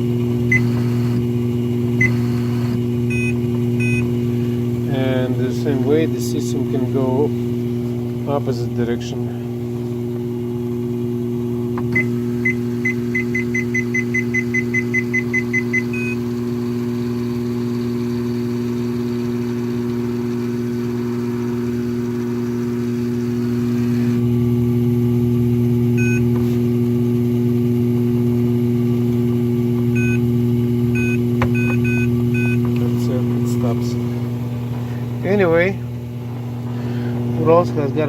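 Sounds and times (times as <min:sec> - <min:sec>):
treadmill motor and belt humming: 0:00.0 - 0:38.0
control panel beeps: 0:00.5 - 0:01.2, 0:02.0 - 0:04.1, 0:11.9 - 0:16.2, 0:26.0 - 0:26.2, 0:30.0 - 0:30.2, 0:31.0 - 0:32.7.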